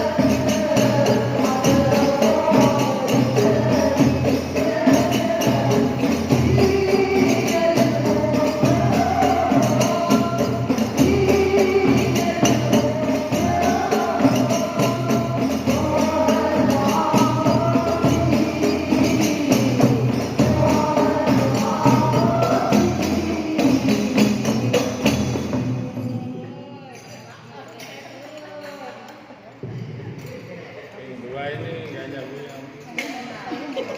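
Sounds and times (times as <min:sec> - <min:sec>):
group of women singing: 0:00.0 - 0:27.0
frame drums with jingles: 0:00.0 - 0:30.5.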